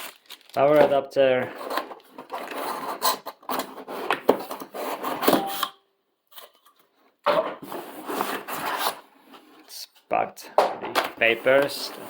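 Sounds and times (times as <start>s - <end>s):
cardboard box rubbing and scraping: 7.6s - 9.5s.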